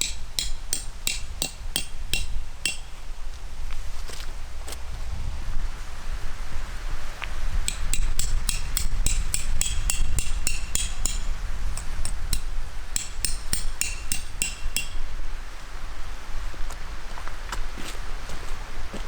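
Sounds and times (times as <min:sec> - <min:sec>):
hammer striking metal pegs: 0:00.0 - 0:03.0, 0:07.7 - 0:15.0.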